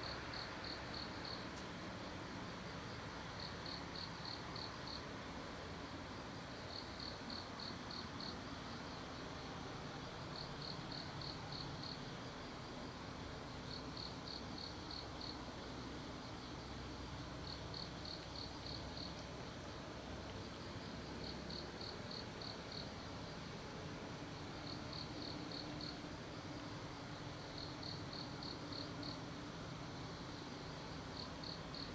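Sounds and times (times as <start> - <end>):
insect chirping: 0.0 - 1.5, 3.4 - 5.0, 6.7 - 9.0, 10.4 - 12.1, 13.7 - 15.5, 16.2 - 19.2, 20.5 - 23.4, 24.4 - 29.3, 30.0 - 31.9
faint steady background noise: 0.0 - 31.9.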